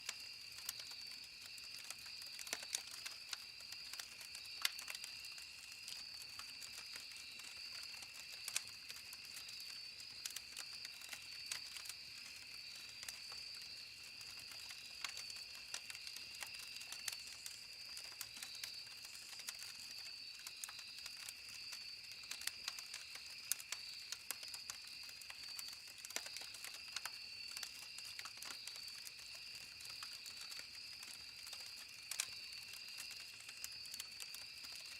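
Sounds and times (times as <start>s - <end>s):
campfire crackling and popping: 0.0s - 34.9s.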